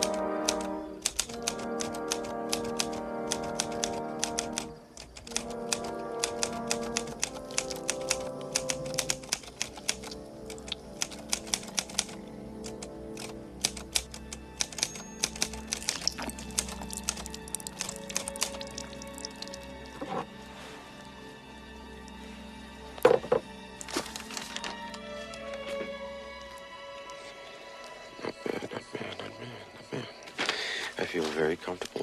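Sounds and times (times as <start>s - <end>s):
typewriter keys clacking: 0.0s - 18.8s
film score music: 0.0s - 32.0s.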